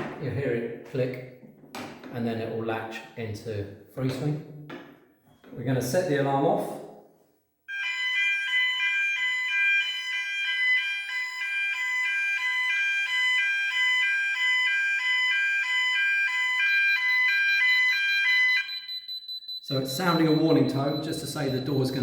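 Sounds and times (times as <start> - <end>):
fire alarm warbling: 7.7 - 22.0.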